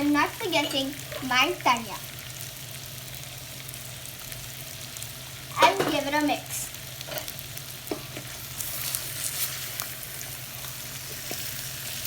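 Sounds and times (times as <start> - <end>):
food sizzling in a hot pan: 0.0 - 12.0.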